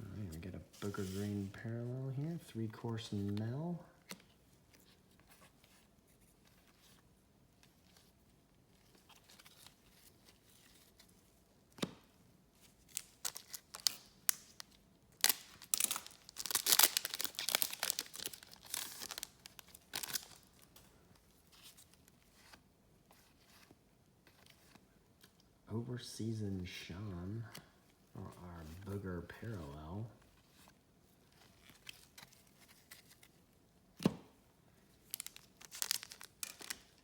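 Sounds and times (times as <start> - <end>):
wrapper tearing and crinkling: 12.9 - 20.7, 35.1 - 37.0.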